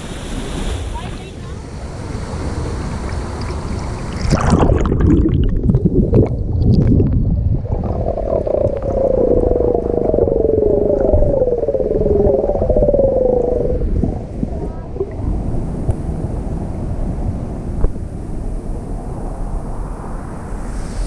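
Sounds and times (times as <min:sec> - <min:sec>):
muffled underwater river rushing: 0:00.0 - 0:21.0
wavering droning tone: 0:07.3 - 0:15.2.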